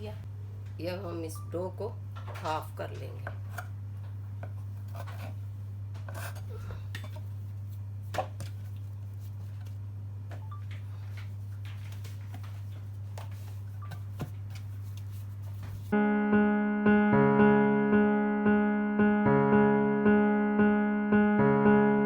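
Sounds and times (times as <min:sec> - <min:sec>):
background piano music: 0:16.0 - 0:22.0.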